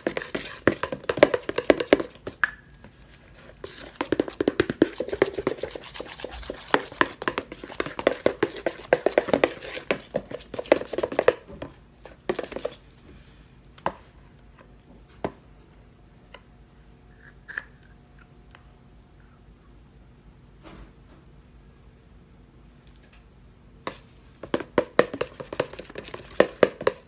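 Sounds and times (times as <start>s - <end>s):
utensil scraping bowl: 0.0s - 2.3s, 3.3s - 11.4s, 23.9s - 27.0s
utensil taps: 0.0s - 2.6s, 3.6s - 11.7s, 12.3s - 12.8s, 23.9s - 27.0s.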